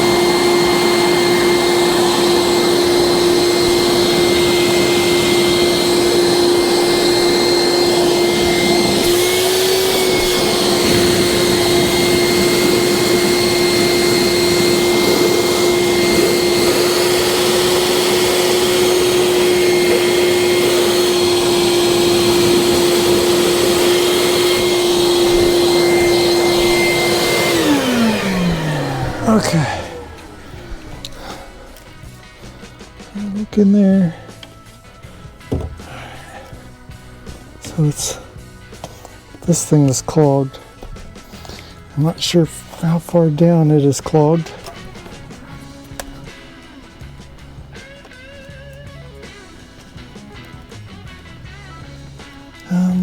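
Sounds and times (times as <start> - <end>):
vacuum motor spinning down: 0.0 - 39.2
shop vacuum running: 0.0 - 53.0.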